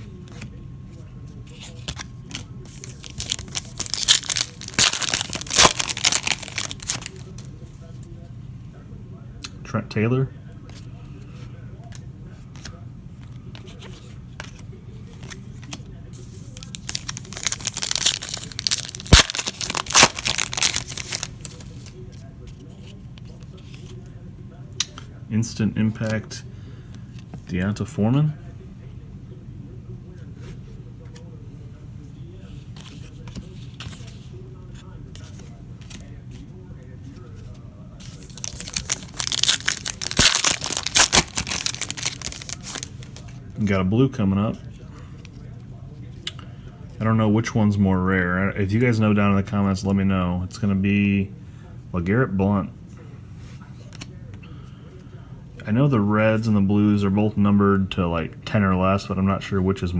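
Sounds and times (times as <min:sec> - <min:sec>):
foil wrapper tearing and crinkling: 0:02.7 - 0:07.5, 0:16.6 - 0:21.9, 0:38.0 - 0:43.1.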